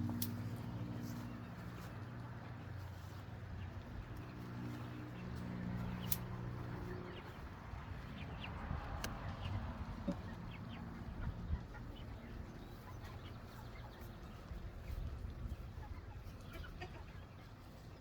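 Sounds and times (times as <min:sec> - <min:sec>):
low steady hum: 0:00.0 - 0:08.7
chickens clucking and peeping: 0:00.0 - 0:18.0.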